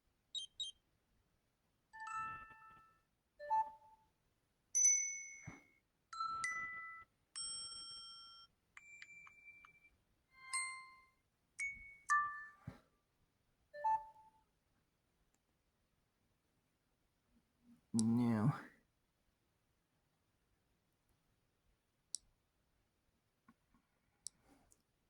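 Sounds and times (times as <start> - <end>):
smartwatch chimes and dings: 4.8 - 12.6.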